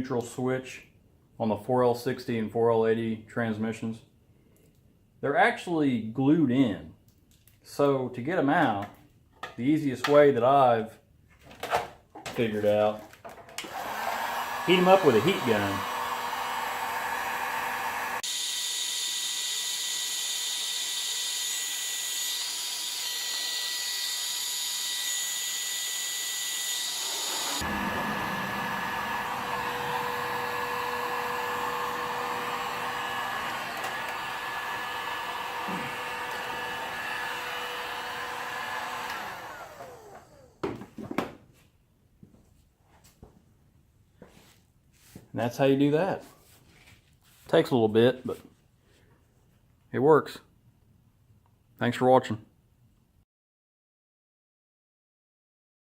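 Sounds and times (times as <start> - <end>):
heat gun blowing: 13.6 - 40.6.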